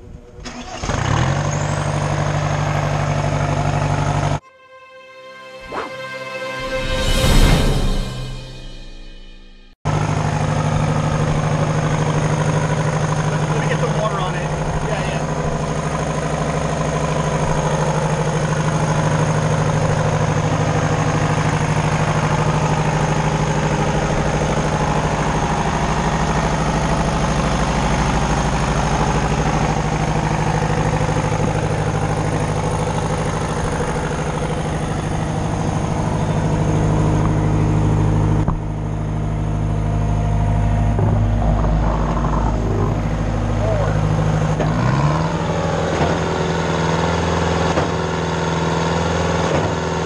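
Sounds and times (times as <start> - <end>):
pump engine idling: 9.9 - 45.0.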